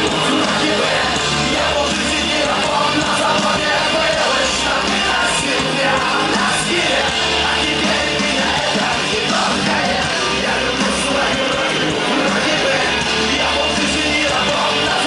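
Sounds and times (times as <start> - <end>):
live rock band playing loud: 0.0 - 15.0.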